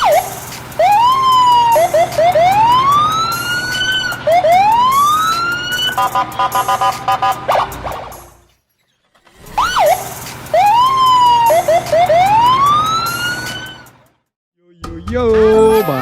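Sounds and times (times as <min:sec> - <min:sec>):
electronic siren whoops: 0:00.0 - 0:07.9, 0:09.5 - 0:13.9
two-tone siren warble: 0:00.0 - 0:08.4, 0:09.5 - 0:13.9.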